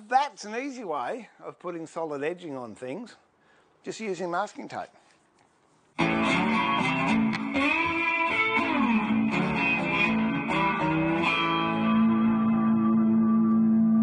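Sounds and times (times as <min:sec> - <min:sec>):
guitar melody with bent notes: 0:06.0 - 0:14.0.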